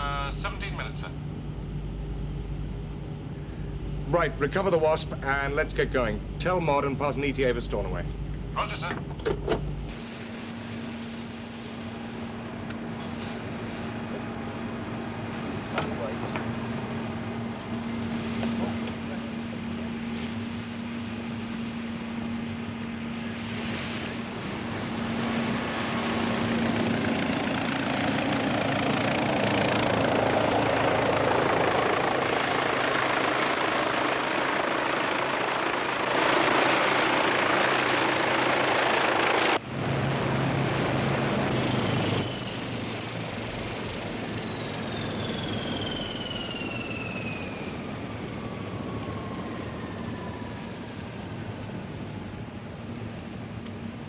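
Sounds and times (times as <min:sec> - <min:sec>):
helicopter rotor and engine: 0:00.0 - 0:54.0
whine falling in pitch: 0:41.4 - 0:47.9.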